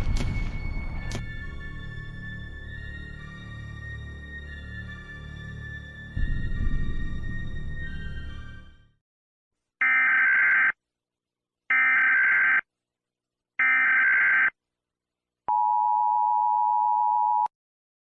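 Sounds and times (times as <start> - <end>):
music: 0.0 - 9.0.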